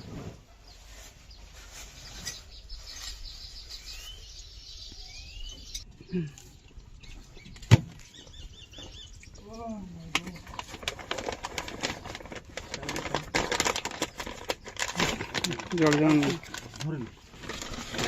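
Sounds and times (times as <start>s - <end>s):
faint bird chirps: 0.6s - 10.4s.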